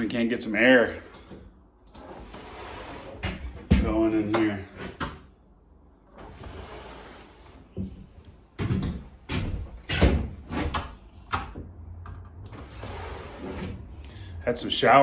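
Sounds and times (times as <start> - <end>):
window sliding scrape: 1.2 - 3.6, 6.1 - 7.8, 12.4 - 14.0.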